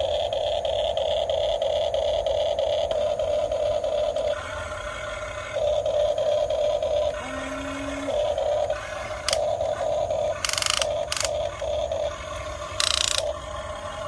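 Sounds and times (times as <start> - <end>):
electric motors whining: 2.9 - 14.0
harsh buzzing bursts: 6.8 - 13.4.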